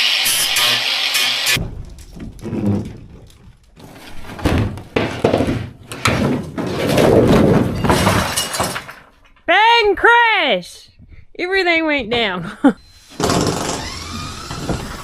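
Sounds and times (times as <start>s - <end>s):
bangs and thuds: 1.6s - 9.3s
scraping of wooden panels: 1.6s - 9.4s, 13.2s - 15.0s
clattering: 1.6s - 9.5s.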